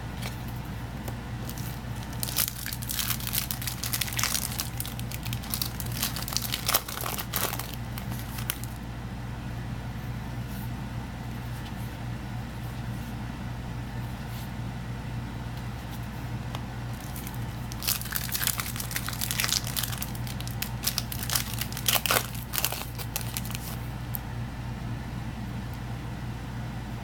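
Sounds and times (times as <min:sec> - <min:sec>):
steady low hum: 0:00.0 - 0:27.0
foil wrapper tearing and crinkling: 0:01.4 - 0:08.8, 0:16.9 - 0:23.8.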